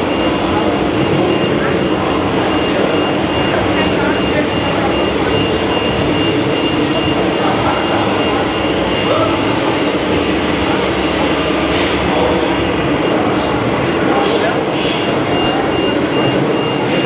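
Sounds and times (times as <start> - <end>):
crowd talking: 0.0 - 17.0
high electronic beep: 0.0 - 17.0
mechanical rumble: 0.0 - 17.0.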